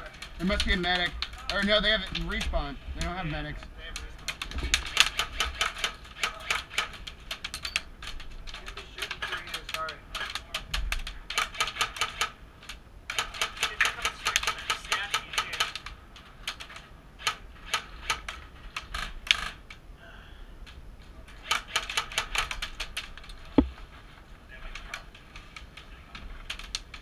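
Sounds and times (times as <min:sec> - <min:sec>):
airsoft guns firing: 0:04.7 - 0:07.0.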